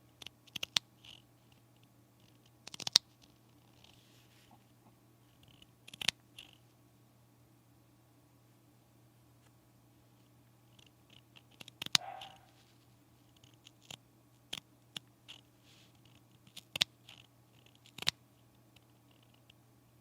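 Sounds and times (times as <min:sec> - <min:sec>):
faint low hum: 0:00.0 - 0:20.0
sharp clicks and snips: 0:00.1 - 0:03.9, 0:05.4 - 0:06.6, 0:10.7 - 0:12.5, 0:13.3 - 0:19.6.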